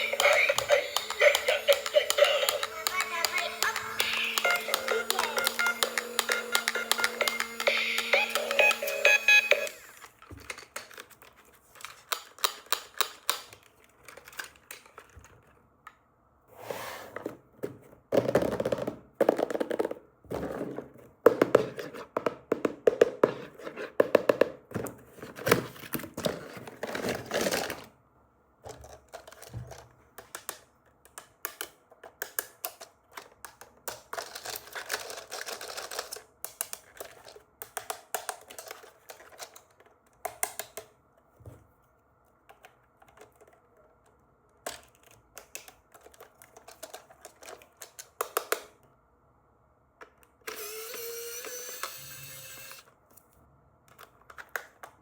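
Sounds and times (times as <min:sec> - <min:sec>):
whir with rising tone: 0:02.6 - 0:10.0
packaging crackling and rustling: 0:34.2 - 0:36.2.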